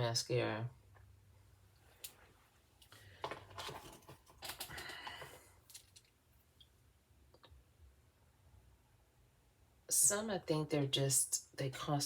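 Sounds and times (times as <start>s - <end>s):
small objects clicking and rustling: 2.8s - 6.2s.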